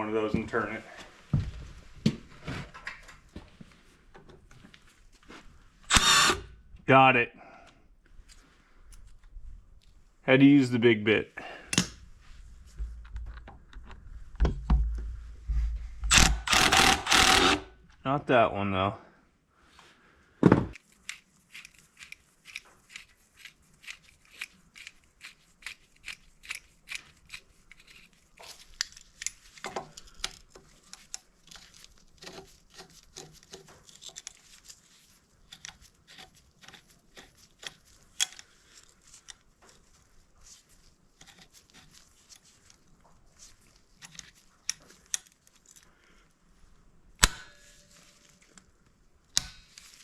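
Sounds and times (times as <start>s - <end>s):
metal clicks and scrapes of tools: 20.8s - 46.0s, 49.3s - 50.0s.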